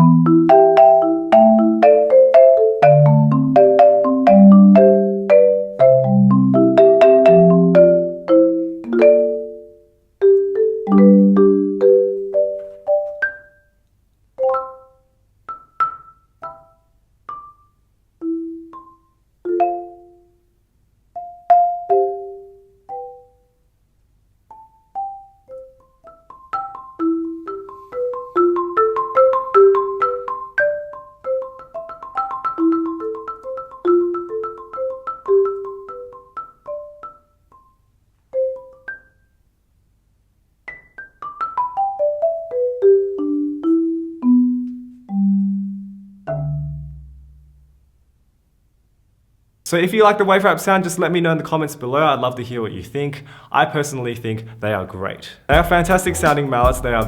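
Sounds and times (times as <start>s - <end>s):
marimba notes: 0.0s - 13.8s, 14.4s - 20.4s, 21.2s - 23.5s, 24.5s - 39.3s, 40.7s - 47.5s, 55.5s - 57.0s.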